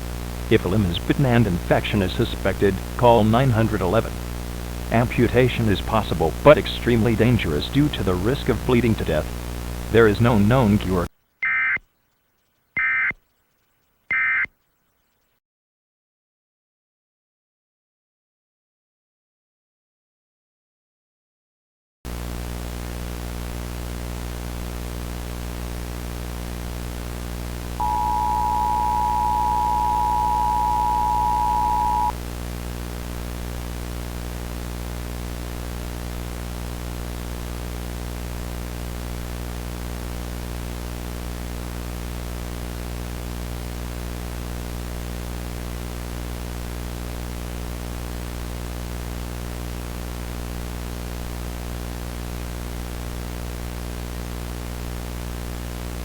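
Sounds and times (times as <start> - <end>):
static hiss: 0.0 - 11.1, 22.1 - 56.0
two-tone alert signal: 27.8 - 32.1.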